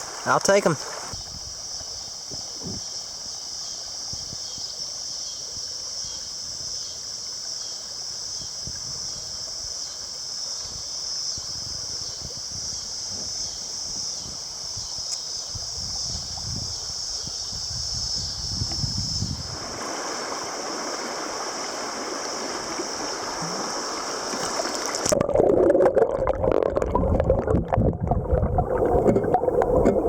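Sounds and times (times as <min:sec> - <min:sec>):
high-pitched insect chorus: 0:00.0 - 0:25.2
river water rushing: 0:19.5 - 0:25.8.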